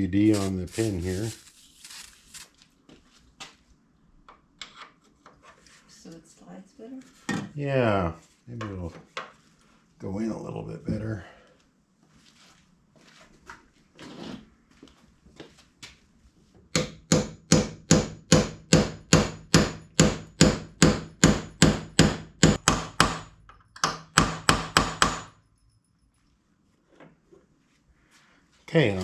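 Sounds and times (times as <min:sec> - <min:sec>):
faint handling and rubbing: 0:00.0 - 0:03.3.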